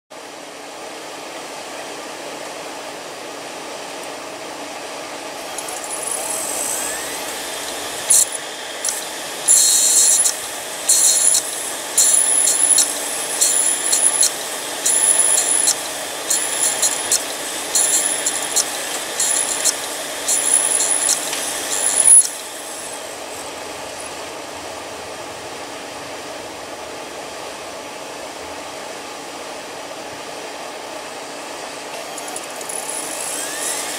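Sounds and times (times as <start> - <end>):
hard drive whirring hiss: 0.2 - 33.9
hard drive clicking: 6.8 - 22.4.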